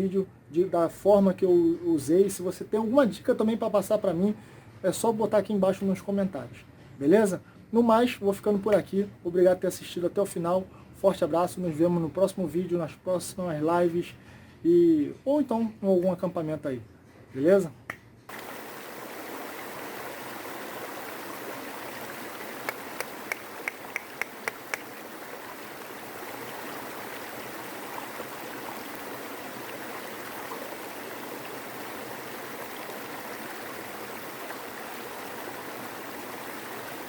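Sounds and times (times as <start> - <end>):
water rushing: 18.3 - 37.0
sharp clicks: 22.6 - 24.9.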